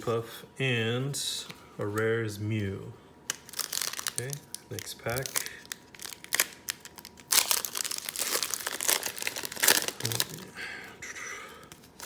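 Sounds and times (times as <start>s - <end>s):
foil wrapper crinkling and tearing: 3.3s - 10.5s.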